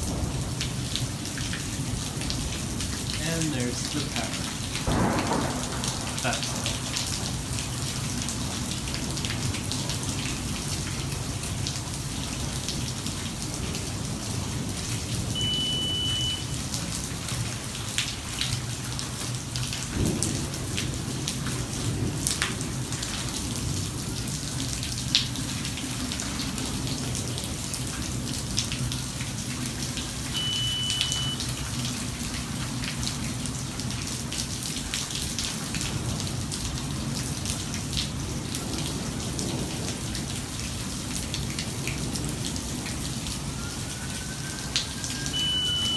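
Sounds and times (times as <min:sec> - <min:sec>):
thunder rumbling: 0:00.0 - 0:17.5, 0:19.9 - 0:31.8
heavy rain falling: 0:00.0 - 0:45.9
high-pitched beep: 0:15.4 - 0:16.6, 0:30.4 - 0:31.5, 0:45.3 - 0:45.9.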